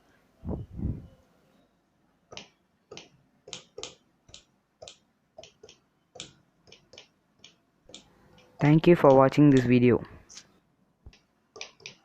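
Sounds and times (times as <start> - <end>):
keyboard controller buttons clicking: 2.4 - 9.8.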